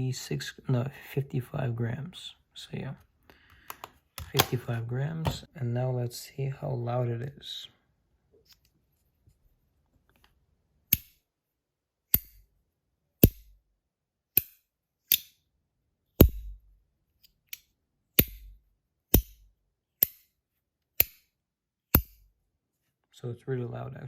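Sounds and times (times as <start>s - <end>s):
metal fidget snapping shut: 3.6s - 5.4s.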